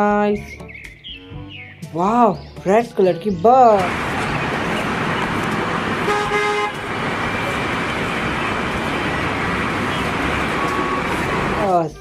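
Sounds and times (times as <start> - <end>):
bus engine running: 3.6 - 12.0
horn honk: 3.9 - 11.6.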